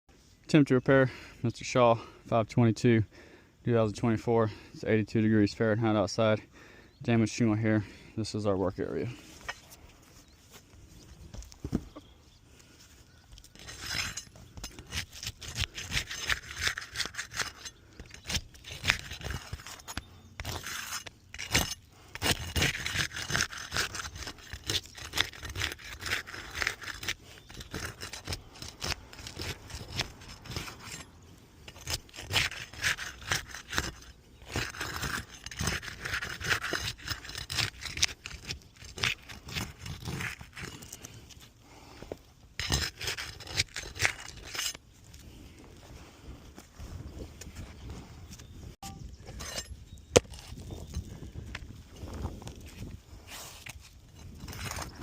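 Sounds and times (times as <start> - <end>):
scraping and prying roof shingles: 13.3 - 44.8, 49.3 - 55.0.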